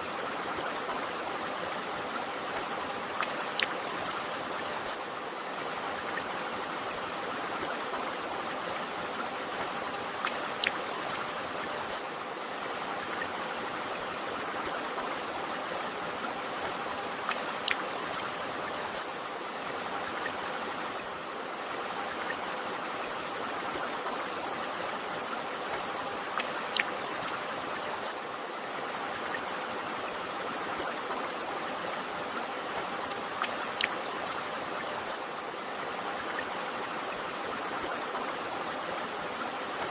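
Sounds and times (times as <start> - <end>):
stream water rushing: 0.0 - 39.9
sharp water splashes: 2.8 - 5.0, 9.9 - 12.0, 16.9 - 19.1, 26.0 - 28.2, 32.9 - 35.2.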